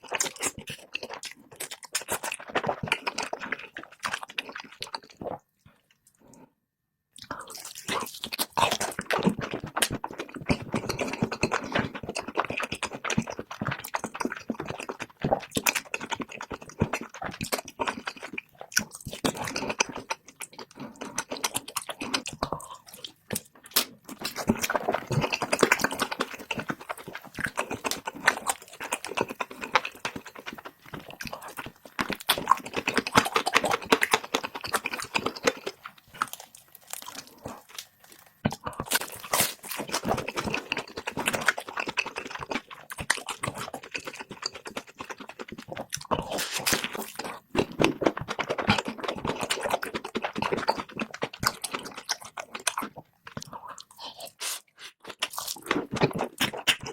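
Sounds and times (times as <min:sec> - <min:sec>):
person chewing and crunching: 0:00.0 - 0:06.5, 0:07.2 - 0:56.9.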